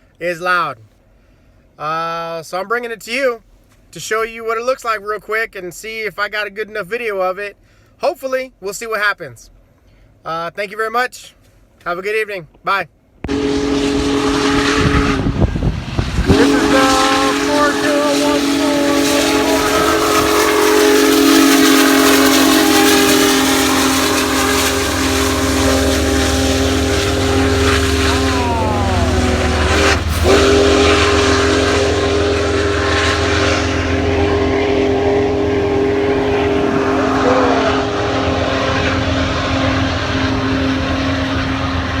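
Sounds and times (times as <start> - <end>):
low rumble of passing train: 13.2 - 42.0
steam locomotive chime whistle: 13.3 - 42.0.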